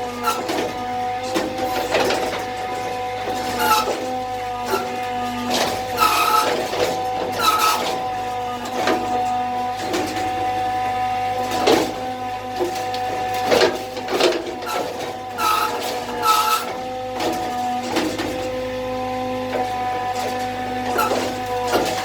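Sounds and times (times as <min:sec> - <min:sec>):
machine humming: 0:00.0 - 0:22.0
short rasping noises: 0:03.4 - 0:04.1, 0:04.7 - 0:08.0.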